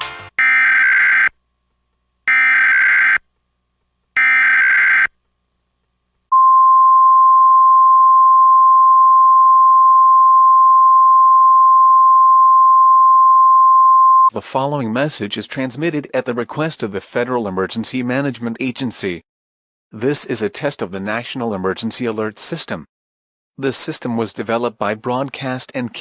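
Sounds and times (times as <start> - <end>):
steady warning alarm tone: 0.4 - 1.3, 2.3 - 3.2, 4.2 - 5.1.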